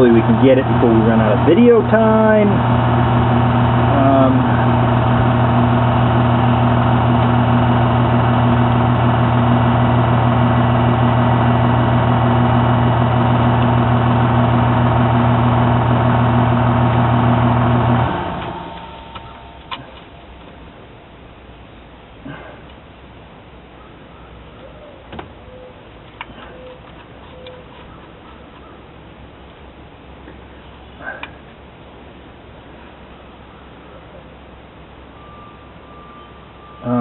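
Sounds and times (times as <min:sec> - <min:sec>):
motor humming: 0:00.0 - 0:20.9.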